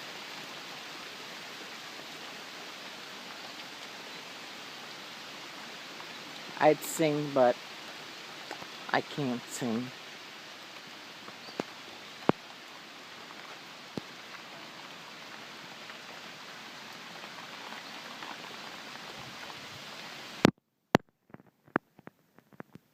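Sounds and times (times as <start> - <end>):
heavy rain pouring: 0.0 - 20.5
faint clicks: 8.4 - 8.8, 10.7 - 12.6.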